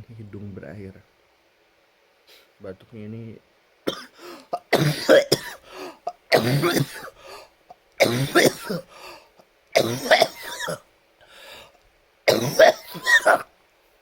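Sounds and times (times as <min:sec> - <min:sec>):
man coughing: 0:03.9 - 0:07.2, 0:08.0 - 0:08.9, 0:09.8 - 0:10.8, 0:12.3 - 0:13.5.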